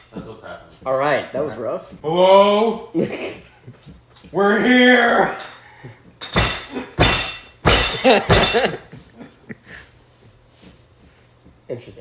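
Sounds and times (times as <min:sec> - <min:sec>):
loud crashing bangs: 0:06.3 - 0:08.8.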